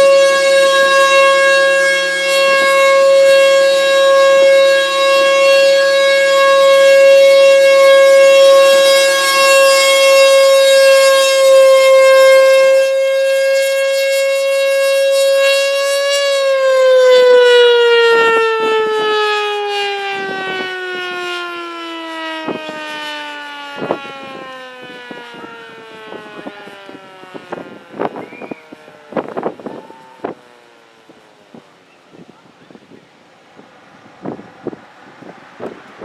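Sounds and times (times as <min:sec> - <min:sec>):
warning siren growling tone: 0:00.0 - 0:31.9, 0:32.5 - 0:36.0.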